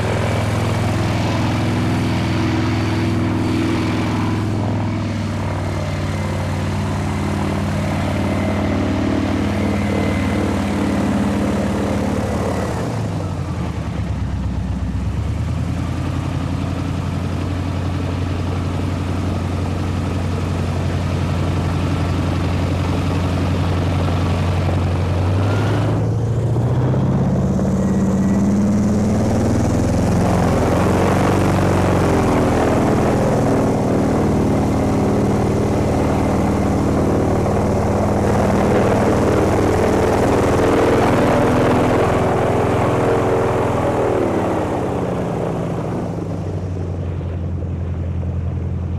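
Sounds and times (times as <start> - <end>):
airboat engine and propeller: 0.0 - 48.9.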